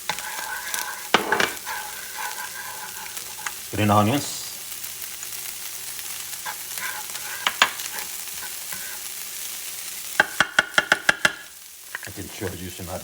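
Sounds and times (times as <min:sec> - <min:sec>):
food sizzling in oil: 0:00.0 - 0:13.0
utensil clacking on pan: 0:00.1 - 0:03.6, 0:06.5 - 0:08.1, 0:10.2 - 0:12.1.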